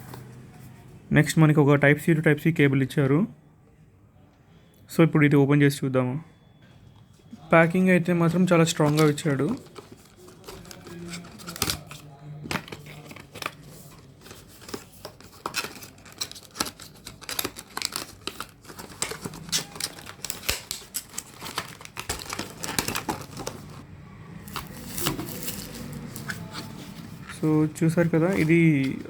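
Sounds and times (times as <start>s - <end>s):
packaging crinkling and tearing: 8.3s - 23.8s, 24.5s - 27.4s.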